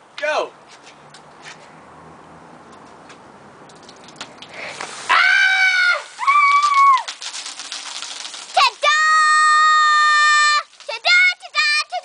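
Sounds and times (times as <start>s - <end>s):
children shrieking: 5.1s - 7.1s.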